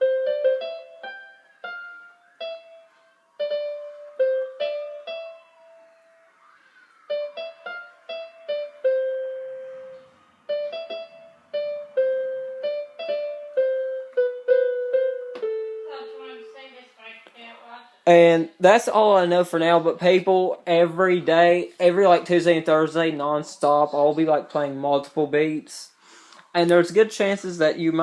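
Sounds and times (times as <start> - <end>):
electronic keyboard slow melody: 0.0 - 16.3.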